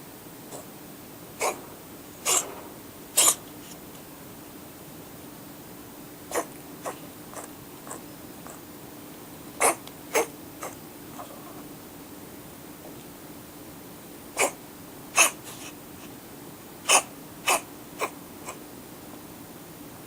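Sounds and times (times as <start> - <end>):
cat coughing: 1.4 - 3.4, 6.3 - 8.0, 9.6 - 10.8, 14.4 - 14.6, 15.2 - 15.7, 16.8 - 18.6.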